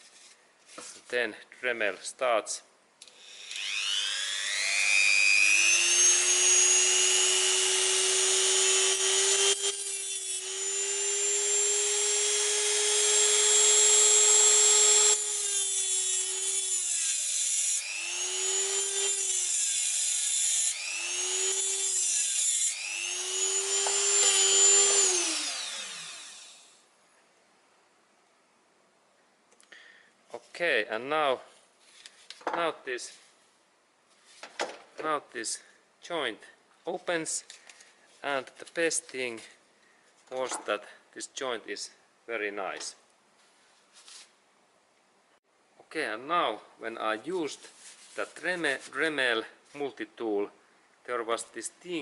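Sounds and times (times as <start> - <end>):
rotary tool whining: 3.0 - 26.8
cut-off disc grinding metal: 3.2 - 26.6.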